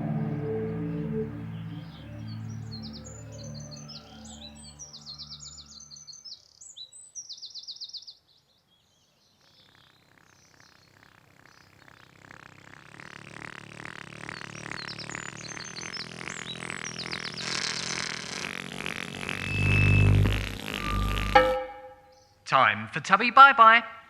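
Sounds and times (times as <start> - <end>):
soft music: 0.0 - 5.5
songbirds chirping in trills: 0.0 - 21.4
rapid pulsing sound: 12.0 - 22.0.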